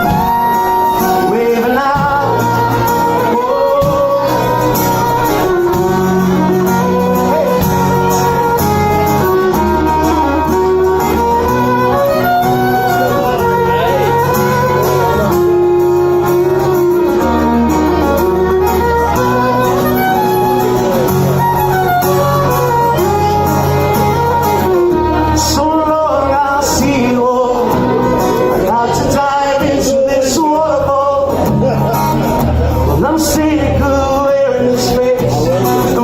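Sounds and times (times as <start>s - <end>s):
live band music: 0.0s - 36.0s
sliding lead melody: 0.0s - 36.0s
steady bass: 0.0s - 36.0s
strummed guitar: 0.0s - 36.0s.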